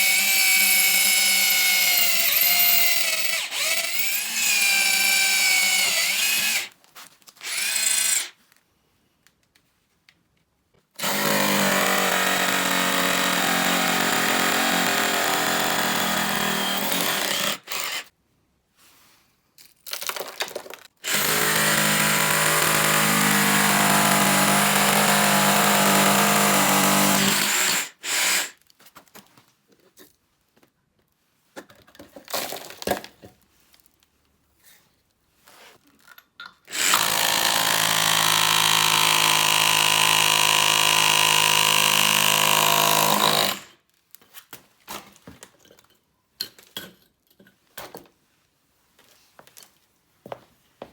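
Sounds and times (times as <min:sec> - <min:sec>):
battery drill running: 0:00.0 - 0:06.7, 0:07.4 - 0:08.3, 0:11.0 - 0:18.0, 0:21.1 - 0:28.5, 0:36.7 - 0:43.6.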